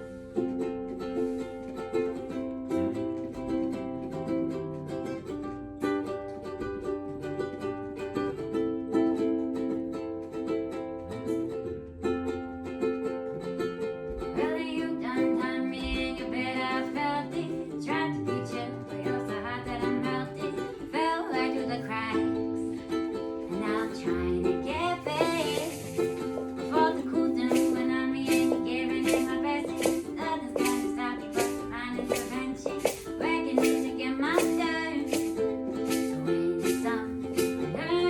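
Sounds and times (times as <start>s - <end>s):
acoustic strummed chords: 0.0s - 38.0s
person singing: 14.4s - 38.0s.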